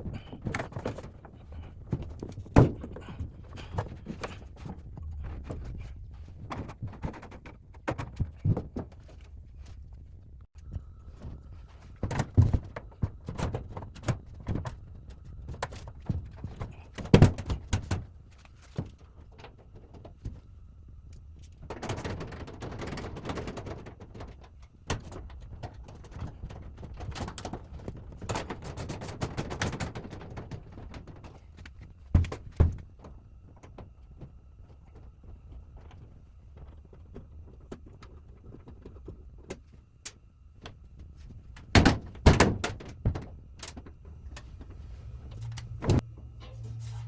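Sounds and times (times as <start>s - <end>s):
metal scraping and rubbing: 44.5s - 47.0s.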